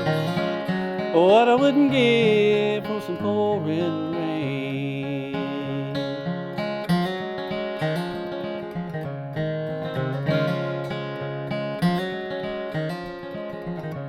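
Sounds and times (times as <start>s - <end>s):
acoustic guitar strumming chords: 0.0s - 14.0s.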